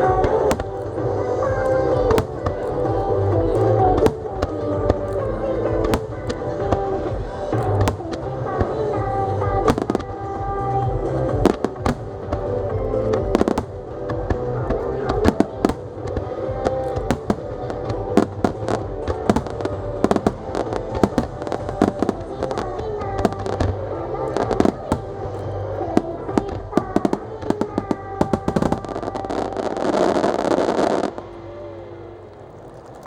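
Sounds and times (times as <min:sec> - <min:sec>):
music: 0:00.0 - 0:33.0
firework shells bursting: 0:00.3 - 0:05.3, 0:14.8 - 0:31.1.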